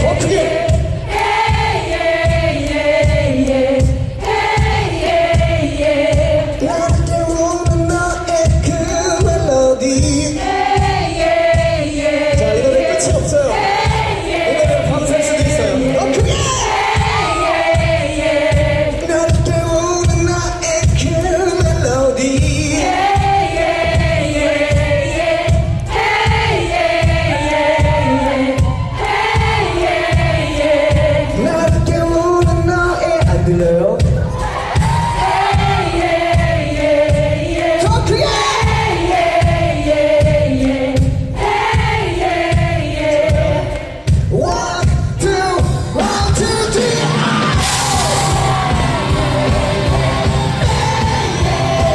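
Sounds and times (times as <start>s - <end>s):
live band playing: 0.0s - 1.7s, 26.4s - 29.6s, 43.3s - 51.9s
kick drum beat: 0.0s - 46.8s, 47.6s - 51.9s
man singing: 6.6s - 10.5s, 12.3s - 13.7s, 14.4s - 16.6s, 19.0s - 23.0s, 31.3s - 34.3s, 44.3s - 47.7s.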